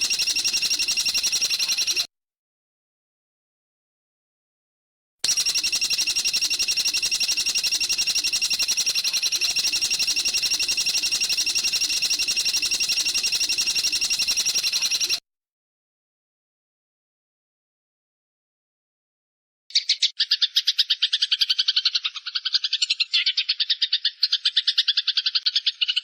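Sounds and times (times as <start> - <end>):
bird rattling call: 0.0 - 2.1, 5.3 - 15.2.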